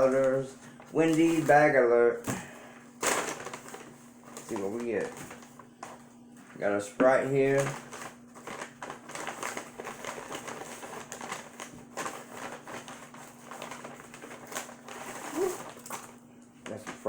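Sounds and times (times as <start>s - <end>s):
paper bag rustling: 0.0s - 1.8s, 3.0s - 17.0s.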